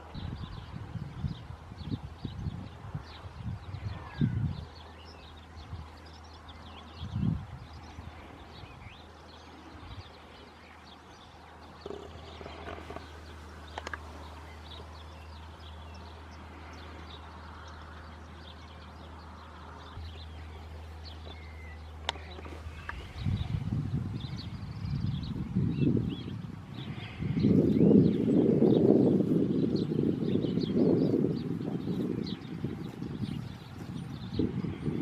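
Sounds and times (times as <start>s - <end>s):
small birds chirping: 0.0s - 35.0s
steady low hum: 0.0s - 35.0s
low rumble: 12.9s - 28.5s.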